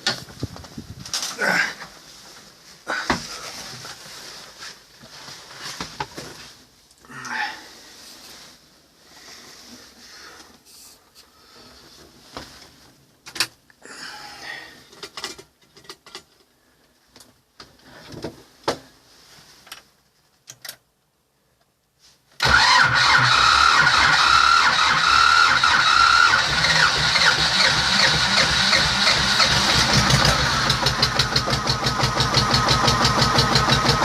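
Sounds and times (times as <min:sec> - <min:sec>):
tractor diesel engine whining: 0:22.4 - 0:34.0.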